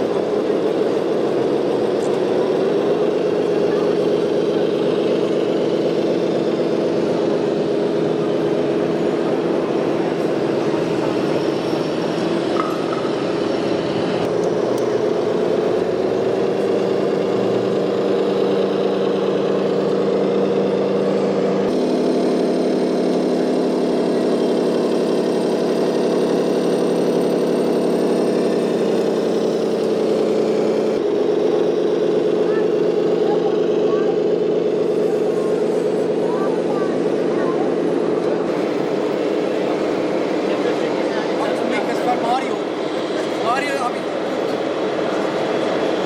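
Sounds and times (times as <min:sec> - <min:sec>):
model vehicle motors humming: 0:00.0 - 0:46.0.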